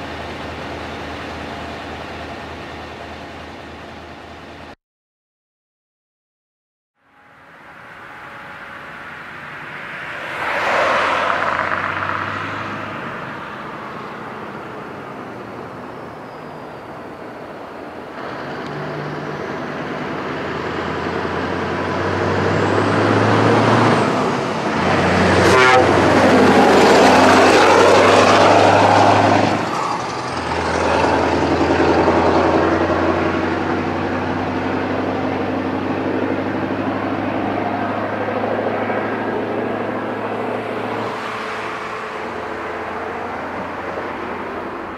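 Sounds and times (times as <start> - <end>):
diesel truck driving past: 7.0 - 44.9.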